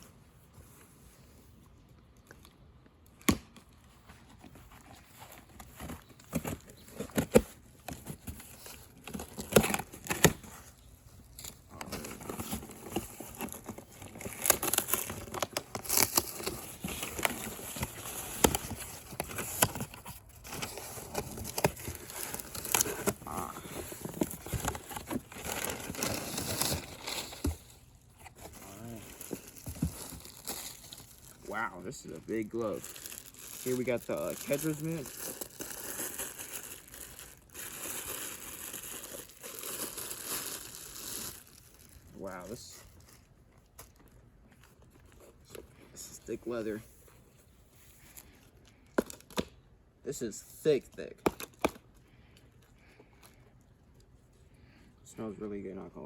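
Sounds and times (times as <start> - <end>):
packaging tearing and crinkling: 5.1 - 45.6.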